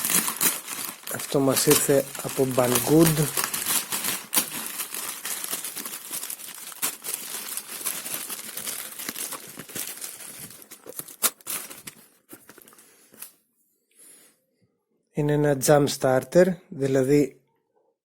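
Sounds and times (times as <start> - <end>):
packaging snap: 0.0 - 13.3
packaging crinkling and rustling: 0.0 - 13.4.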